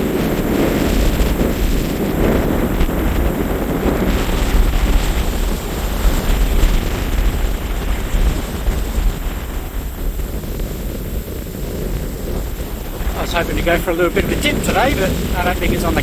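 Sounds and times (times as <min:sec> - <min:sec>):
choppy surf: 0:00.0 - 0:16.0
wind buffeting microphone: 0:00.0 - 0:16.0.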